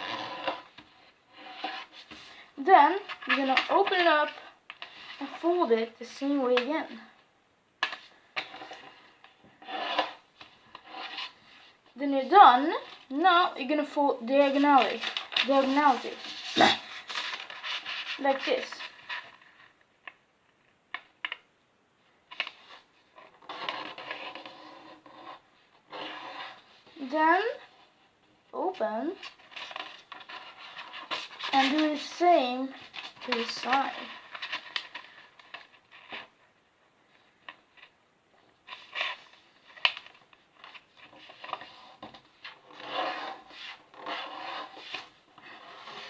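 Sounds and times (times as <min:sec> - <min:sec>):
paper rustling: 0:13.8 - 0:20.2, 0:29.2 - 0:36.3, 0:38.6 - 0:46.0
paper crinkling: 0:14.4 - 0:20.2, 0:29.2 - 0:36.3, 0:38.6 - 0:46.0.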